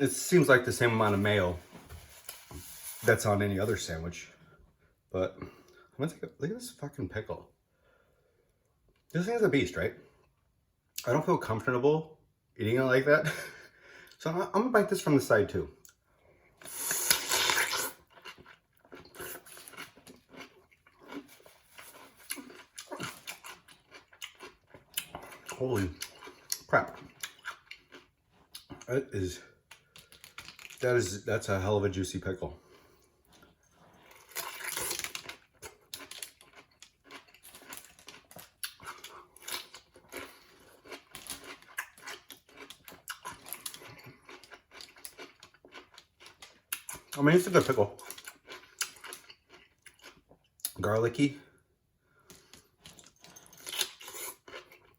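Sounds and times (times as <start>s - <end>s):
wet chewing: 16.6s - 28.9s
crunching and chewing pickle: 16.6s - 30.9s, 32.7s - 50.9s, 52.4s - 54.9s.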